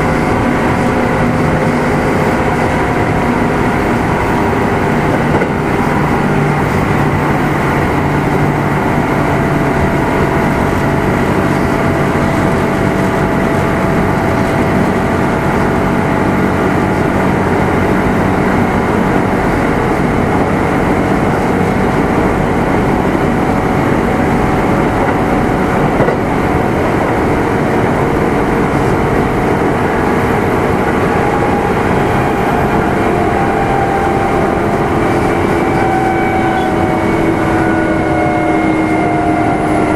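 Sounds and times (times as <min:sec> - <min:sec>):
traction motor hum: 0:00.0 - 0:39.9
train wheel and rail noise: 0:00.0 - 0:39.9.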